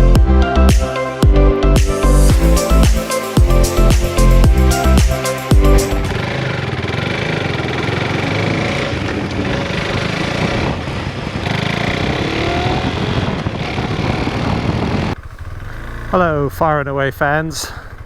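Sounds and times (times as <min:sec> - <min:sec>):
motorcycle engine revving: 0:01.0 - 0:18.0
wind rush: 0:09.0 - 0:15.2.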